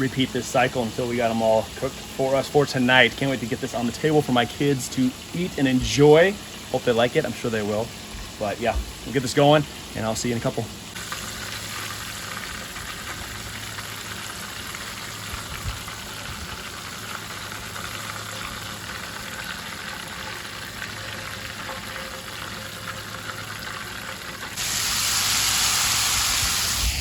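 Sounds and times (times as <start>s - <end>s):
fish frying in hot oil: 0.0s - 27.0s.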